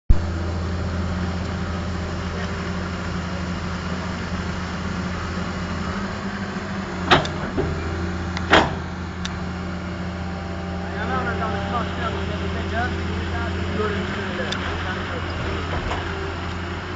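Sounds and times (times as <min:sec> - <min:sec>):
construction machine engine humming: 0:00.1 - 0:16.9
sharp knocks: 0:08.4 - 0:08.9.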